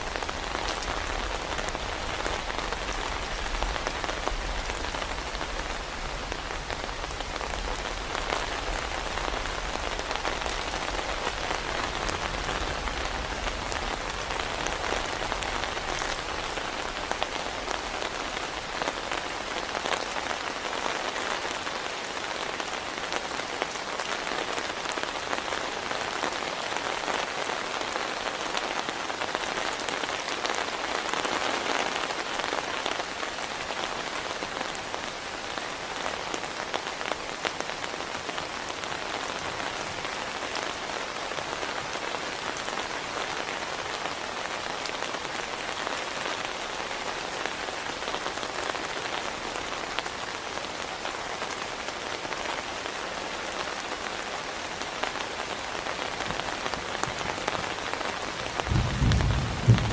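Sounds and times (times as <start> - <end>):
heavy rain pattering: 0.0 - 59.9.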